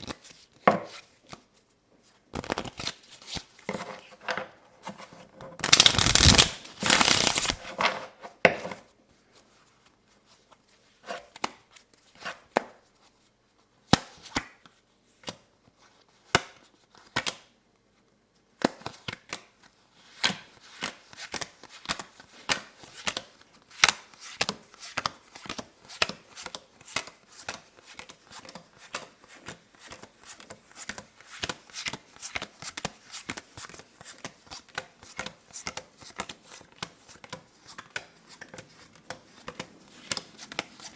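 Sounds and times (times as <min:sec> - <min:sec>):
cards shuffling: 0:02.4 - 0:02.9, 0:05.6 - 0:07.6
cards clicking: 0:05.6 - 0:07.6.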